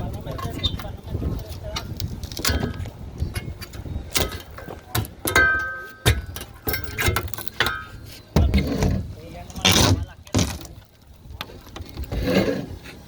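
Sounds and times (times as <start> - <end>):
knocks and bangs from roofing work: 2.4 - 10.8.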